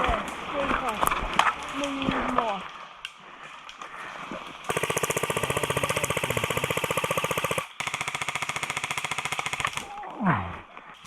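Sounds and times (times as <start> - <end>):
airsoft gun rattling full auto: 4.7 - 9.9.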